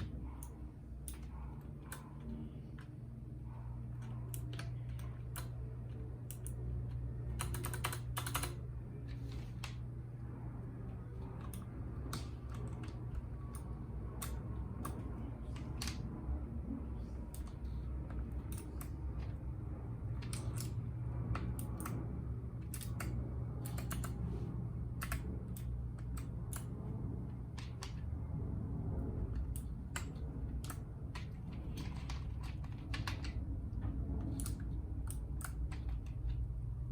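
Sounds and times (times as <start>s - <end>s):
steady low hum: 0.0s - 36.9s
mechanical keyboard keystroke clicks: 4.1s - 8.6s, 17.3s - 19.4s, 20.2s - 22.0s, 22.6s - 24.2s, 25.0s - 26.8s, 34.2s - 36.4s.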